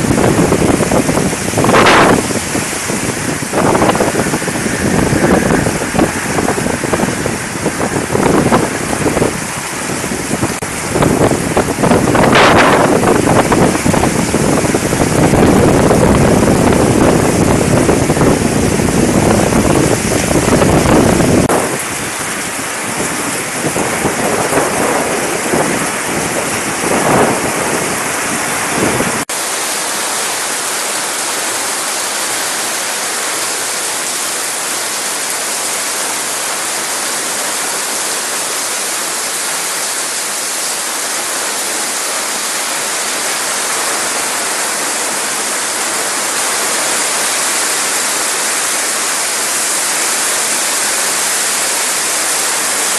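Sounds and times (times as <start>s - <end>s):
wind buffeting microphone: 0.0s - 29.3s
heavy rain pouring: 0.0s - 52.9s.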